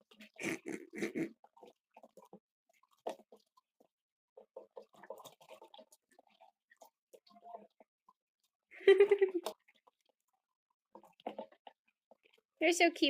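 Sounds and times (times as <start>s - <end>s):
small animals splashing in water: 0.1s - 8.2s.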